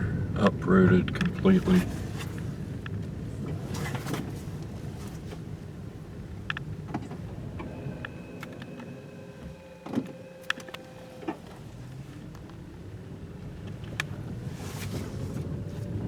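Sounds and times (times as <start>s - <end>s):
car cabin rumble: 0.0s - 16.0s
motor whine: 7.2s - 12.6s.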